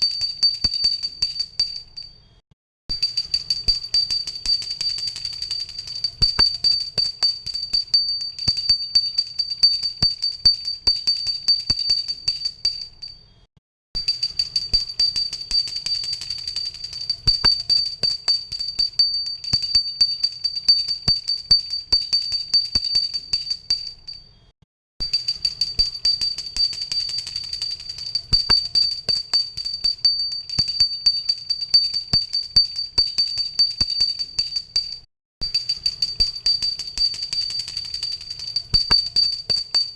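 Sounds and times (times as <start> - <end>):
hand bell rung rapidly: 0.0 - 2.1, 2.9 - 13.2, 14.0 - 24.2, 25.1 - 39.9.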